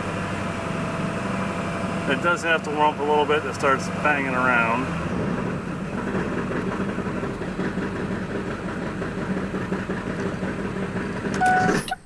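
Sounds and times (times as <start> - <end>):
diesel engine idling with banging: 0.0 - 12.0
brief tone: 11.4 - 12.0.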